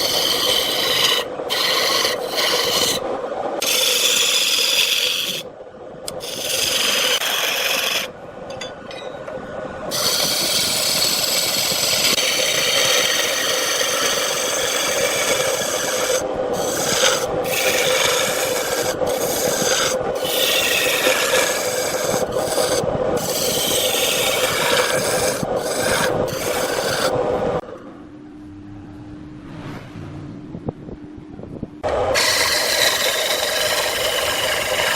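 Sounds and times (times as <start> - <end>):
turning tool scraping wood: 0.0 - 3.0, 3.6 - 5.5, 6.1 - 8.1, 9.9 - 27.2, 31.9 - 34.9
lathe hum: 0.0 - 8.3, 9.5 - 27.6, 31.8 - 34.9.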